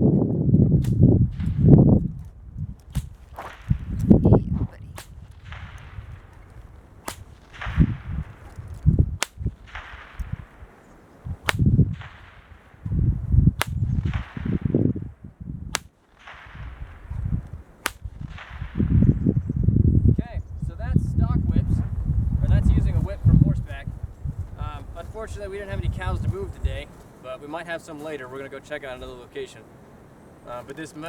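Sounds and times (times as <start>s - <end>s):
whip cracking with echo: 0.8s - 1.5s, 2.9s - 4.0s, 4.9s - 12.9s, 13.6s - 14.9s, 15.7s - 19.1s.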